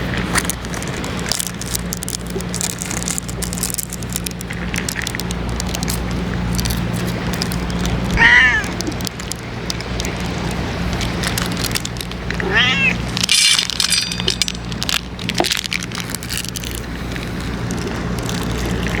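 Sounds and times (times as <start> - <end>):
steady low hum: 0.0 - 19.0
cat meowing: 8.1 - 8.9, 12.4 - 13.1.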